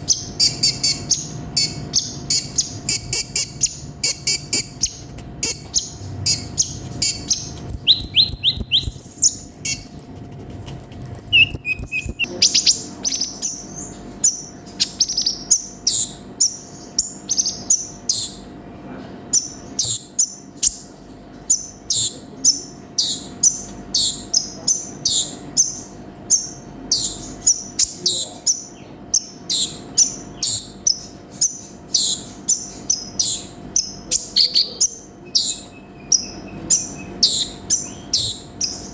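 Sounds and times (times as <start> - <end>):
bird high trills: 0.0 - 10.2, 10.8 - 18.4
bird sharp high chirps: 0.0 - 10.2, 10.8 - 18.5, 21.5 - 38.9.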